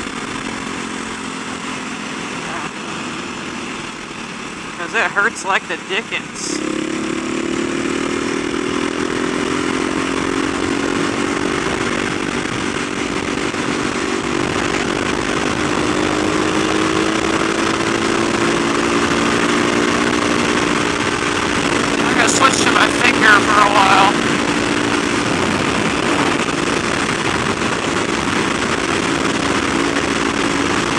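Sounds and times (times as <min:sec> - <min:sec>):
motorcycle engine running: 0:00.0 - 0:30.9
wind buffeting microphone: 0:24.2 - 0:30.9.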